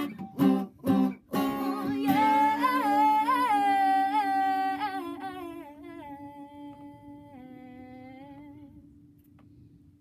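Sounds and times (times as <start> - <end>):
acoustic guitar chord ringing: 0.0 - 5.2
person singing long ooh: 1.4 - 8.9.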